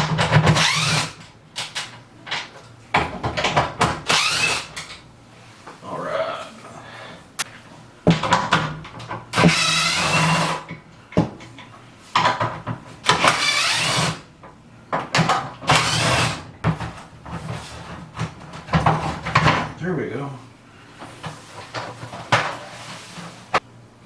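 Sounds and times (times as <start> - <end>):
cordless power driver running: 0.0 - 1.2, 4.0 - 4.9, 9.4 - 10.7, 13.0 - 14.2, 15.7 - 16.5.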